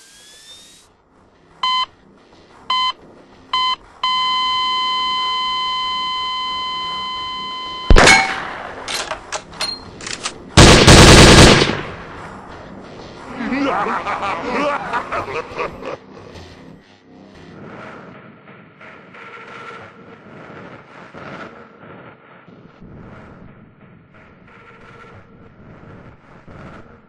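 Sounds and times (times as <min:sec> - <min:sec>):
electronic countdown beeps: 0:01.6 - 0:01.9, 0:02.7 - 0:07.9
automatic airsoft gunfire: 0:10.6 - 0:12.0.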